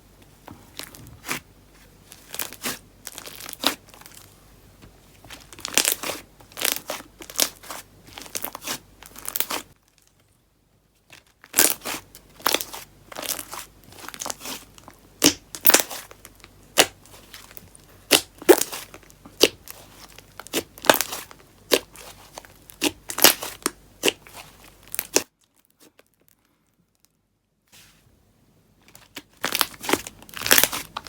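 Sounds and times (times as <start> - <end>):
slime squished with crackling pops: 11.4 - 25.3.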